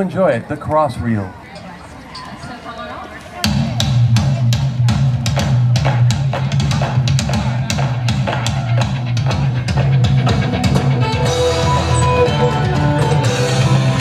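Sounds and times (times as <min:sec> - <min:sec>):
band playing dance music: 0:03.0 - 0:14.0
even drum beat: 0:03.4 - 0:14.0.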